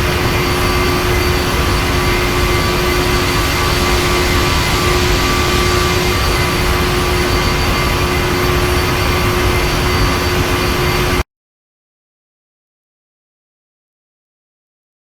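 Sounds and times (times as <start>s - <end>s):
airflow rush in cabin: 0.0s - 11.2s
jet engine hum and whine: 0.0s - 11.2s.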